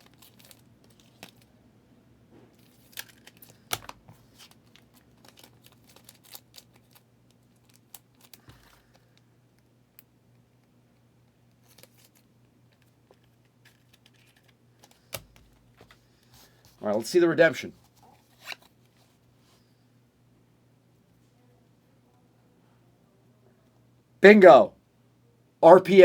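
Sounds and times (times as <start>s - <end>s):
crinkling card wrappers: 0.0s - 1.5s, 2.6s - 9.2s, 11.5s - 17.1s, 17.8s - 19.1s.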